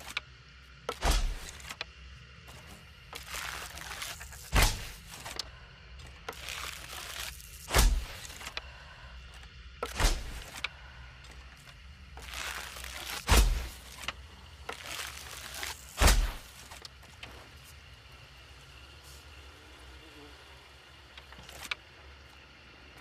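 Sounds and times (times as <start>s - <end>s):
arrow thumps: 0.9s - 1.5s, 4.5s - 5.0s, 7.7s - 8.3s, 9.8s - 10.5s, 13.3s - 13.7s, 16.0s - 16.5s.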